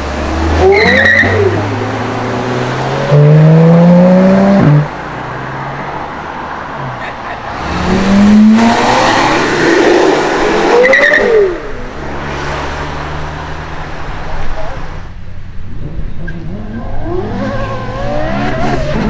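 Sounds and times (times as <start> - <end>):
sports car engine revving: 0.0 - 5.2, 7.5 - 14.4
car passing by: 1.3 - 15.0.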